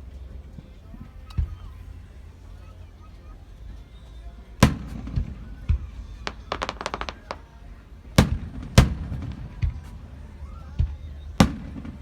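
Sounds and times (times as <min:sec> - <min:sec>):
loud firework bangs: 0:04.6 - 0:12.0
small crackling firework pops: 0:04.6 - 0:12.0.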